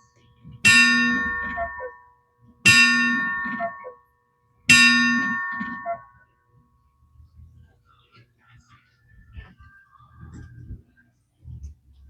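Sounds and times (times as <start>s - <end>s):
cuckoo clock bell striking: 0.6s - 2.1s, 2.7s - 4.0s, 4.7s - 6.2s.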